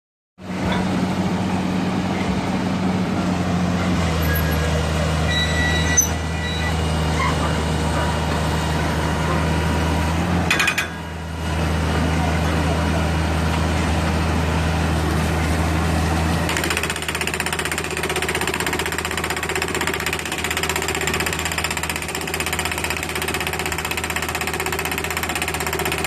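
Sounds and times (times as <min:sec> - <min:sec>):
drilling rig engine running: 0:00.4 - 0:26.0
clatter of sharp knocks: 0:10.5 - 0:11.0.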